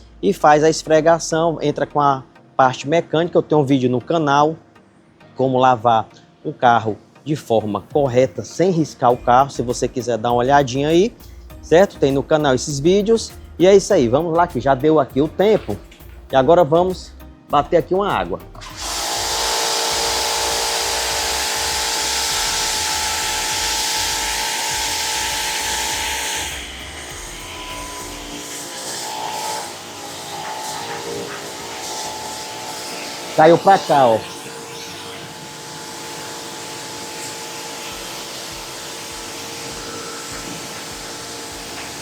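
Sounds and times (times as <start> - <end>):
pressure washer motor whine: 18.6 - 42.0
water jet hissing: 18.6 - 42.0.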